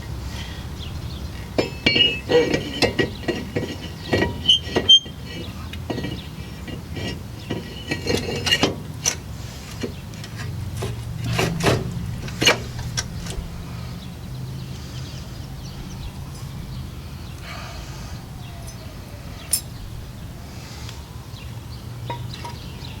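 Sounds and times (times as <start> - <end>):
metallic clinks of tools: 19.4 - 19.8.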